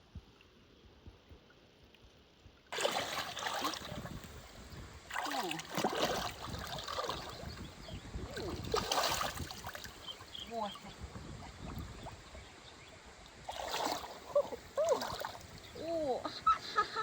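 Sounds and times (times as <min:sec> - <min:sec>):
water splashing and sloshing: 0:01.8 - 0:16.7.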